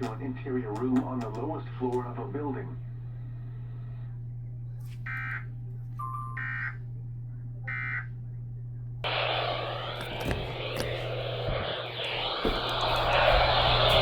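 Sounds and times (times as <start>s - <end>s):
steady low hum: 0.0s - 14.0s
loud rushing noise: 9.2s - 14.0s.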